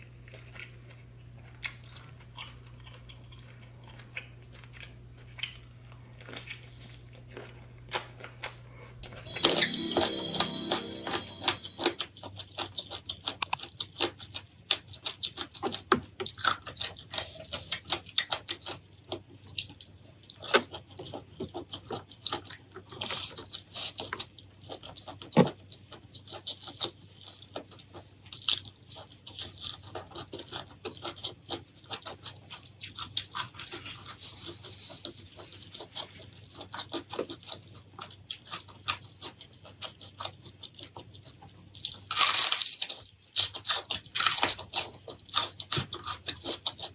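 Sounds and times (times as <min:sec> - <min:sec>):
wet chewing and smacking: 0:00.3 - 0:08.6, 0:13.1 - 0:34.2, 0:35.4 - 0:46.9.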